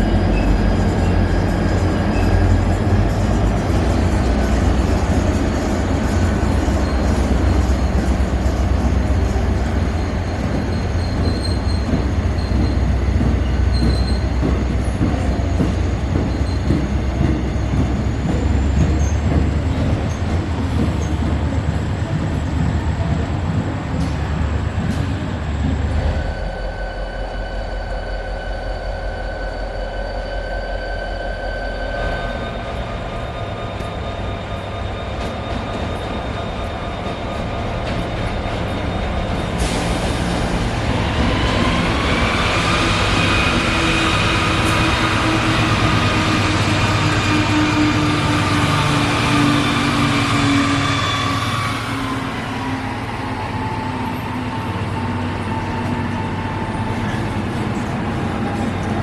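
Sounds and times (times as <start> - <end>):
high wheel squeal: 0.0 - 21.2, 25.8 - 58.8
train rumbling past: 0.0 - 59.0.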